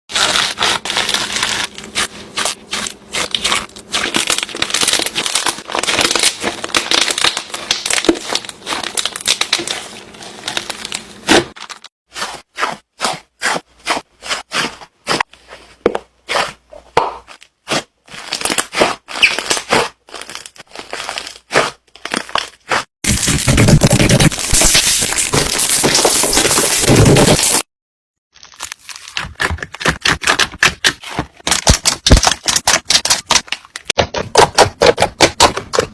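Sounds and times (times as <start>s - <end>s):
slime crackling and popping: 2.8s - 11.9s, 18.2s - 27.6s.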